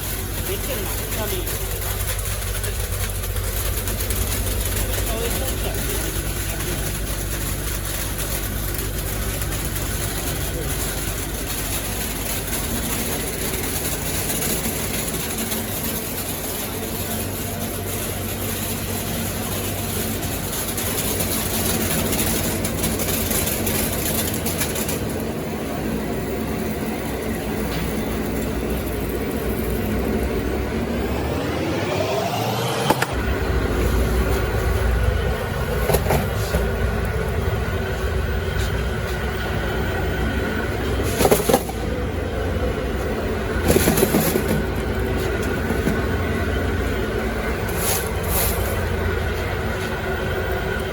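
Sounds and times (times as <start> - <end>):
machinery running: 0.0 - 50.9
motor whine rising: 26.0 - 38.4.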